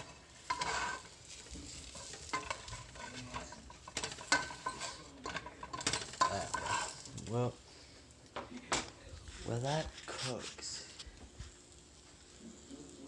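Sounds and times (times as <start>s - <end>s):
utensil scraping pan: 0.0s - 7.2s
meat sizzling in a frying pan: 0.0s - 13.0s.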